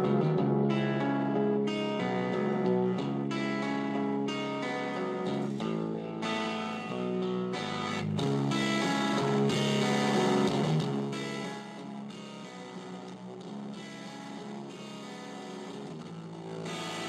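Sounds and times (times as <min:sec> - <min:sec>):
distorted electric guitar chords: 0:00.0 - 0:17.0.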